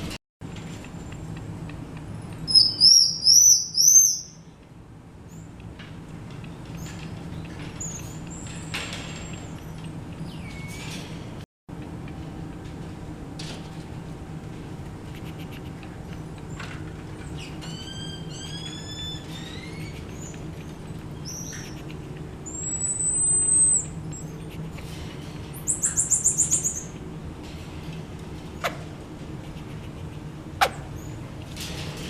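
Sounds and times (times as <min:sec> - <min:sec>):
marmoset calling in high whistles: 0:02.5 - 0:04.4, 0:17.7 - 0:20.4, 0:21.2 - 0:24.3.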